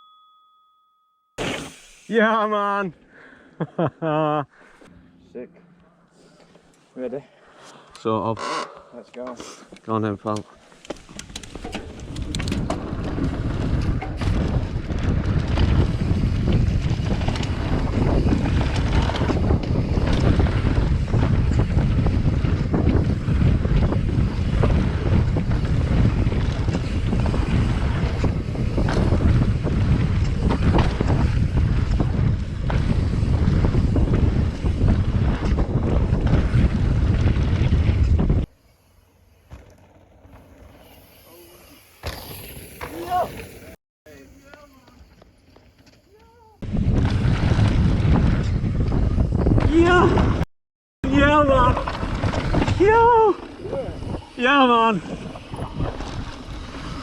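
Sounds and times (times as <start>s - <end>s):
bike rattles and knocks: 10.8s - 38.4s, 51.6s - 53.6s
wind buffeting microphone: 11.2s - 38.5s, 46.6s - 50.4s, 51.0s - 57.0s.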